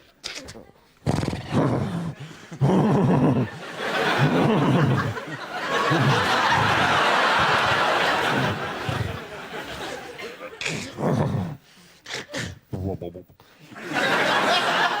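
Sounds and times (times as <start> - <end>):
studio audience laughing: 1.8 - 10.8, 13.7 - 15.0.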